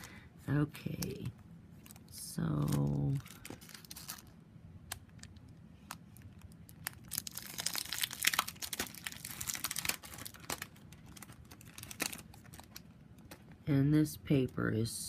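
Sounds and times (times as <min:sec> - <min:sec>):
packaging crinkling and rustling: 0:01.8 - 0:13.6.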